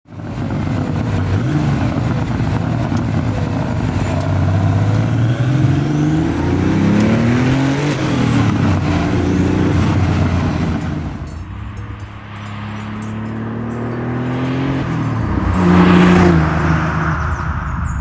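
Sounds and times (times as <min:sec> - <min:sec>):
car engine accelerating: 0:00.0 - 0:18.0.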